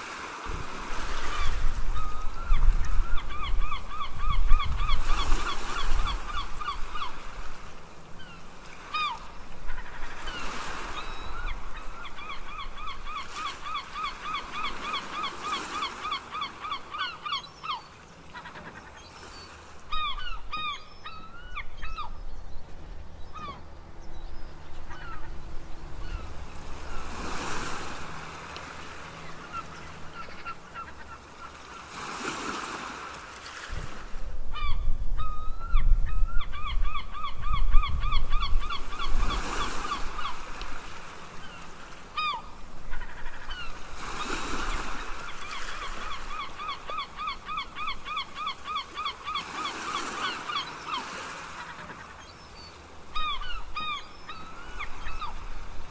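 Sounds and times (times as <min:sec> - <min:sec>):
ocean waves washing in: 0:00.0 - 0:18.3, 0:22.9 - 0:34.5
gulls yelping: 0:01.2 - 0:07.3, 0:08.2 - 0:22.2, 0:23.3 - 0:23.7, 0:24.7 - 0:28.1, 0:28.7 - 0:32.2, 0:34.6 - 0:55.7.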